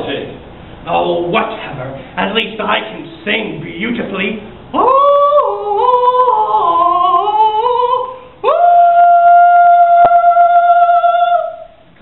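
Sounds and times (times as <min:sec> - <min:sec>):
person singing high without words: 0:04.7 - 0:11.8.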